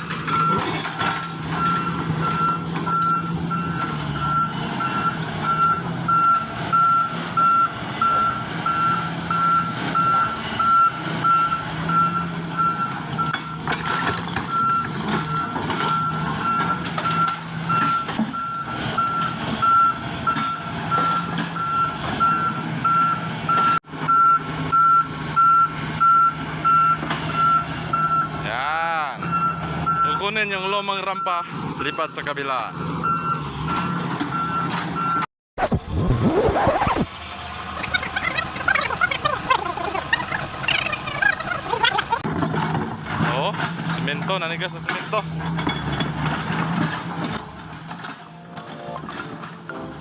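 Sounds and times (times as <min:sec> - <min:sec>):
reversing alarm beeping: 0:00.0 - 0:00.8, 0:01.5 - 0:28.5, 0:29.1 - 0:35.3
heavy vehicle engine running: 0:00.0 - 0:35.9, 0:37.0 - 0:50.0.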